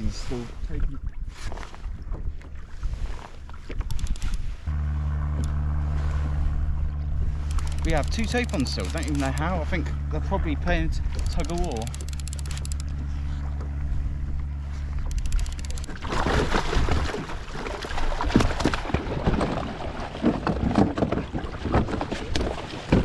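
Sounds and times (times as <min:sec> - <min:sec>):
steady low rumble: 0:00.0 - 0:23.0
rapid clicking: 0:07.4 - 0:09.8, 0:11.1 - 0:13.0, 0:15.0 - 0:16.0
fish splashing in water: 0:14.9 - 0:23.0.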